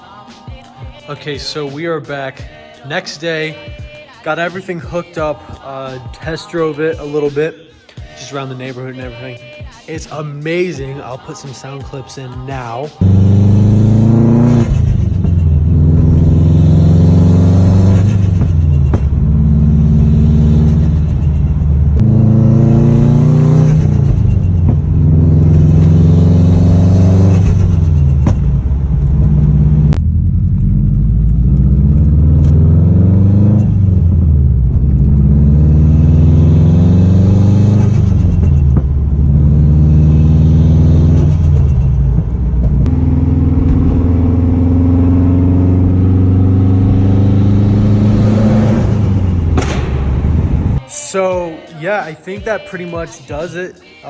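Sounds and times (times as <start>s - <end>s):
car engine accelerating hard: 13.0s - 50.8s.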